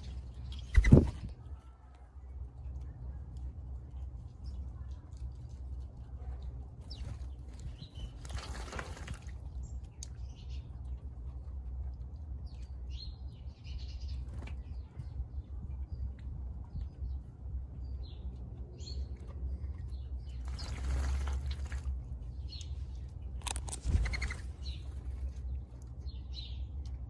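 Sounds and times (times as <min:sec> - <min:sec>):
steady low rumble: 0:00.0 - 0:27.0
high bird chirps: 0:23.9 - 0:24.9.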